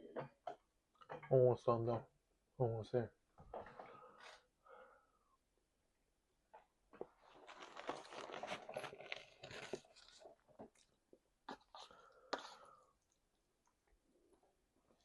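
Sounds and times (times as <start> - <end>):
wet crackling chewing: 7.3 - 15.0.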